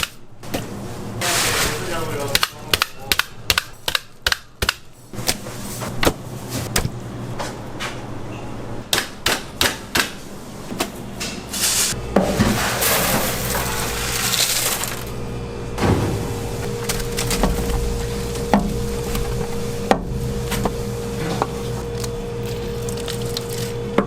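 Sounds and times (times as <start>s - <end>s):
low hum: 13.2s - 24.0s.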